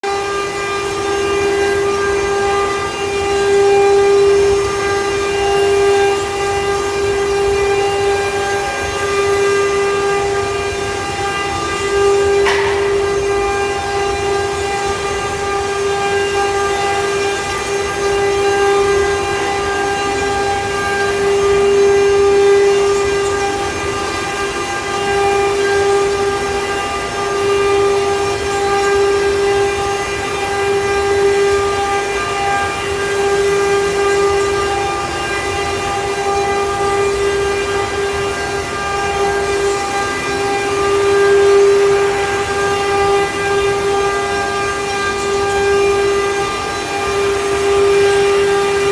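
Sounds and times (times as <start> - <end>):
router spindle whine: 0.0 - 48.9.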